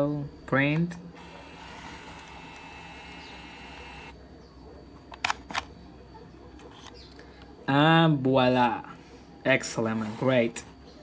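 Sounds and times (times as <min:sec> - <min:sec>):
label maker motor whir: 0:01.1 - 0:04.2.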